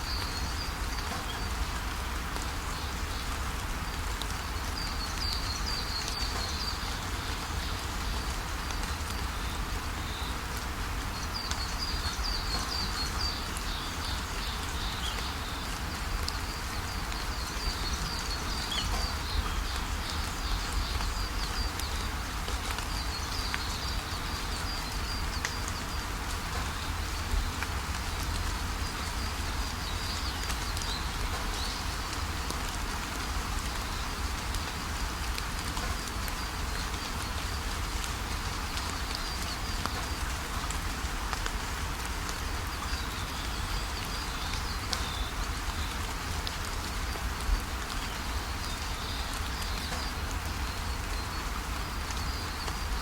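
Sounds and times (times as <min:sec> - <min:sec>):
small birds chirping trills: 0:11.2 - 0:32.6.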